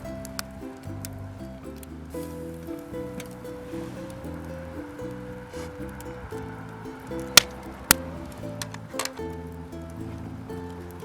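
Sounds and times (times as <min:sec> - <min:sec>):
wood fire crackle: 0:01.8 - 0:10.0.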